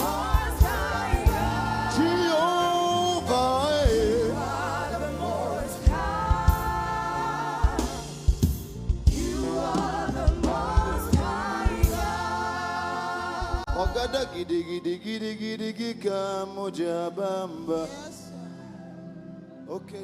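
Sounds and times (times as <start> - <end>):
steady bass: 0.0 - 14.3
gospel singing voices: 0.0 - 20.0.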